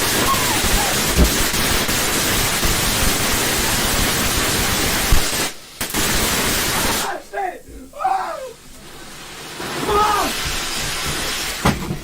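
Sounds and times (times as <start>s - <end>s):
firework fountain hissing: 0.0s - 12.0s.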